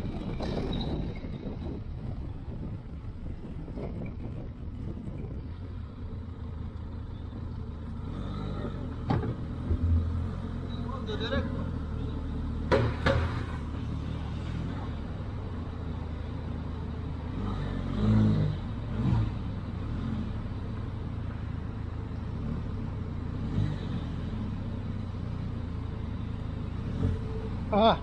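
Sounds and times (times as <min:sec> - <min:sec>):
vehicle engine humming: 0:00.0 - 0:28.0
sharp knocks: 0:12.7 - 0:13.4.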